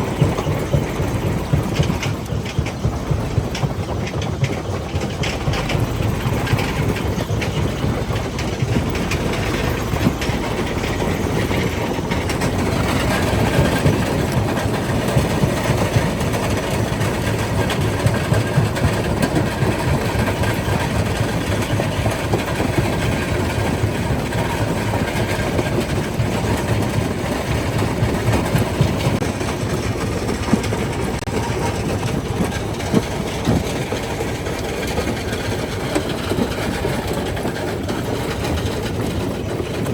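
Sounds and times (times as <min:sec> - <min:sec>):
rock crusher rumbling: 0:00.0 - 0:39.9.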